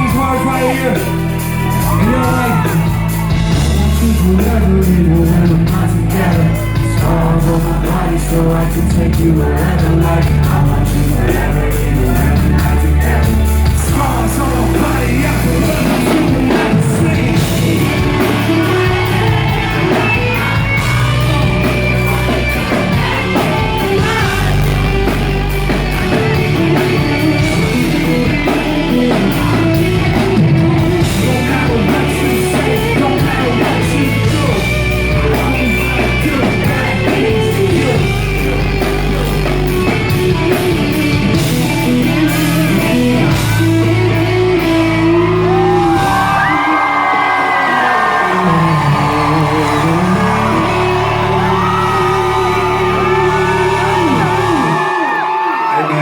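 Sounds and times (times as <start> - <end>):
crowd yelling: 0.0 - 56.0
live band playing pop rock: 0.0 - 56.0
person singing: 0.0 - 56.0.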